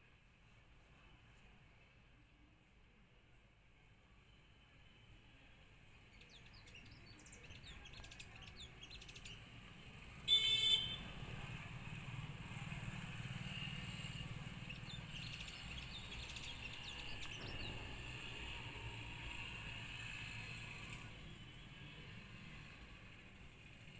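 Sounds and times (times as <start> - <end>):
low traffic rumble: 4.3 - 23.9
vehicle horn: 10.3 - 11.2.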